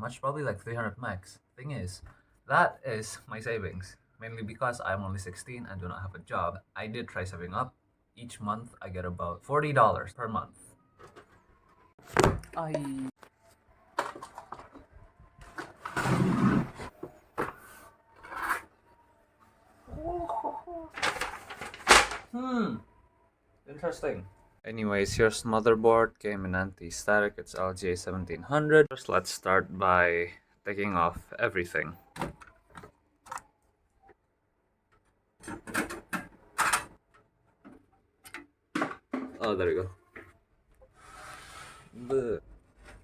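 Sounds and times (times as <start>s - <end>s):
computer parts clattering and rustling: 14.0s - 16.0s, 21.0s - 22.3s, 34.9s - 40.3s.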